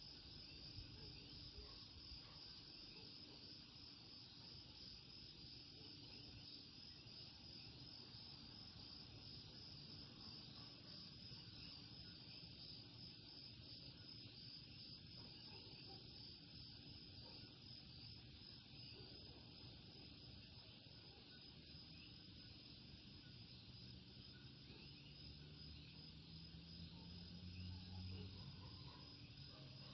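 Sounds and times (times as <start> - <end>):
insects trilling: 0.0 - 28.3.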